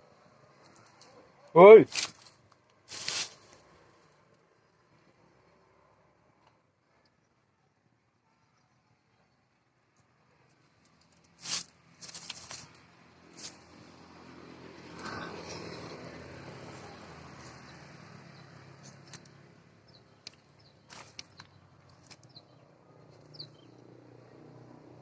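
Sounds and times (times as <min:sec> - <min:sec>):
distant engine humming: 0:11.4 - 0:22.2.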